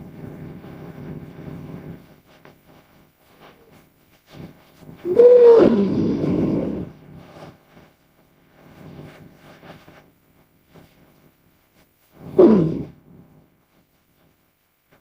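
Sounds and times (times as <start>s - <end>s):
faint rough sounds: 0.0s - 15.0s
dinosaur roar: 5.1s - 6.8s, 12.4s - 12.9s.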